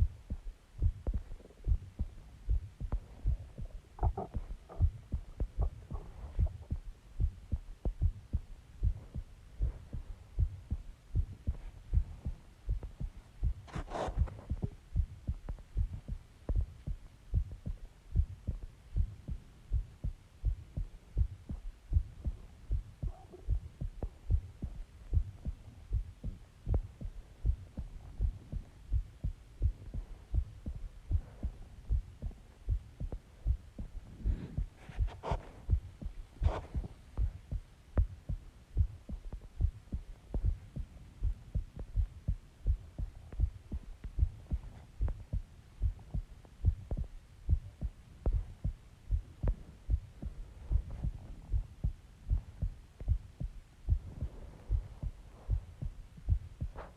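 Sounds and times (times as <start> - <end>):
heartbeat thumps: 0.0 - 56.9.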